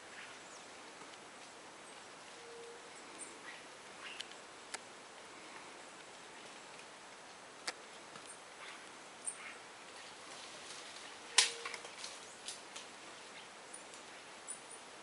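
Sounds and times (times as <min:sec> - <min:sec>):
small clicks and rustles: 0:09.9 - 0:14.2.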